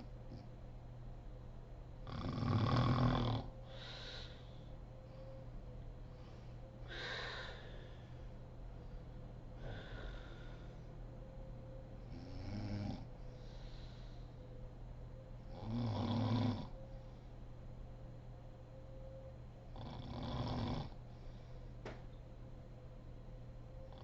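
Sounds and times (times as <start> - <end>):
woman snoring: 2.0 - 4.4, 12.1 - 13.1, 15.5 - 16.8, 19.8 - 21.0.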